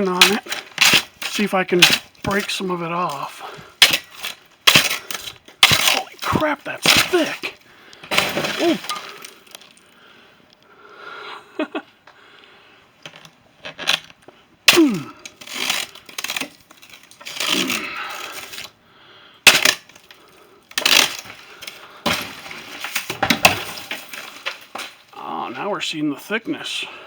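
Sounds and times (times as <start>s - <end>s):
ice cracking and breaking: 0.0s - 9.9s, 14.7s - 18.7s, 19.5s - 25.2s.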